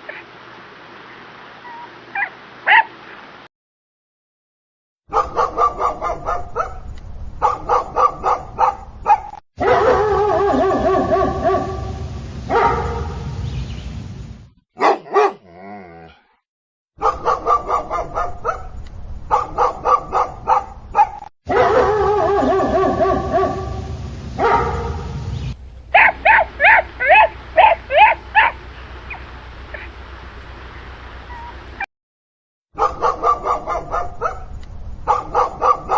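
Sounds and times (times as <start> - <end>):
dogs yipping: 1.6 - 2.9, 5.1 - 6.8, 7.4 - 11.8, 12.5 - 13.0, 14.8 - 15.4, 17.0 - 18.7, 19.3 - 23.6, 24.4 - 25.0, 25.9 - 30.0, 31.3 - 31.9, 32.8 - 34.5, 35.1 - 35.9
dogs barking: 1.8 - 3.0, 5.1 - 6.8, 7.4 - 13.4, 14.8 - 15.6, 17.0 - 30.4, 32.8 - 34.5, 35.1 - 35.9
dogs howling: 9.6 - 11.9, 21.5 - 23.8, 25.9 - 30.0.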